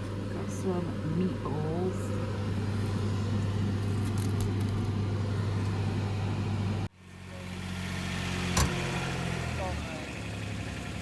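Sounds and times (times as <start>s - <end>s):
vehicle engine droning: 0.0s - 11.0s
engine idling: 6.8s - 11.0s.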